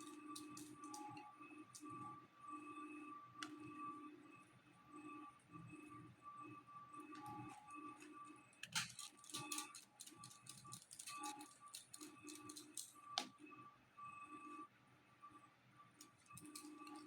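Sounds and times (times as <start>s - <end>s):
small hard parts clicking: 0.0s - 1.1s, 8.6s - 13.3s.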